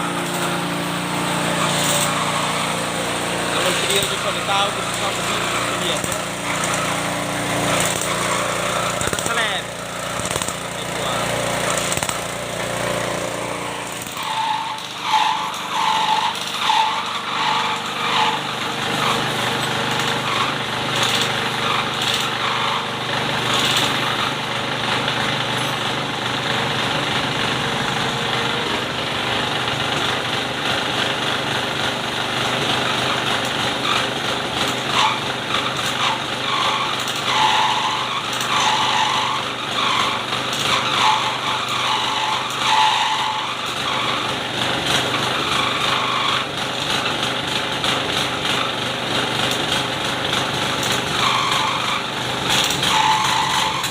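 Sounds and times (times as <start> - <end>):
engine running steadily: 0.0 - 53.9.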